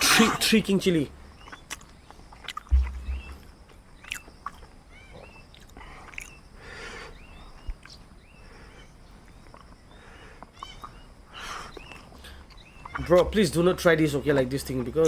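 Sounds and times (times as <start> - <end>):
bird chirps: 0.0 - 15.0
man chewing chillies: 1.3 - 6.7, 7.5 - 8.2, 9.2 - 13.3.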